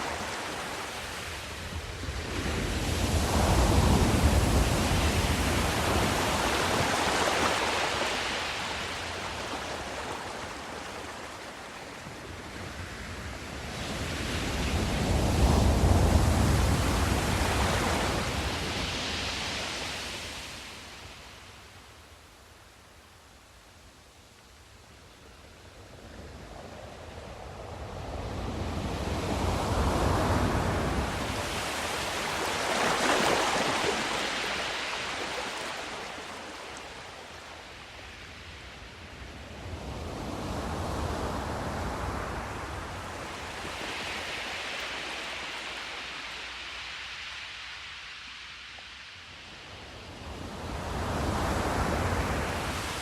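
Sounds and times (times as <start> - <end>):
ocean waves washing in: 0.0 - 21.6, 25.8 - 53.0.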